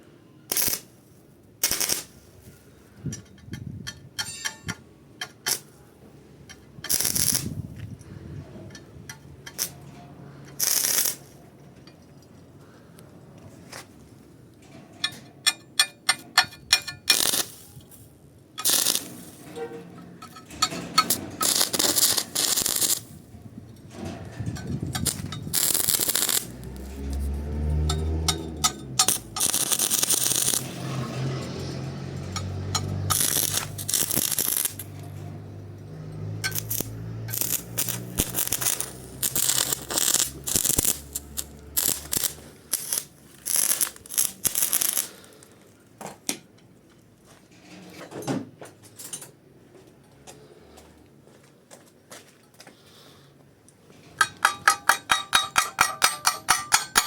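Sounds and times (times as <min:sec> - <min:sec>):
welding arc crackling: 0:00.5 - 0:00.9, 0:01.6 - 0:02.3, 0:06.8 - 0:07.6, 0:09.4 - 0:09.8, 0:10.6 - 0:11.4, 0:15.8 - 0:19.5, 0:20.2 - 0:23.4, 0:25.0 - 0:45.4.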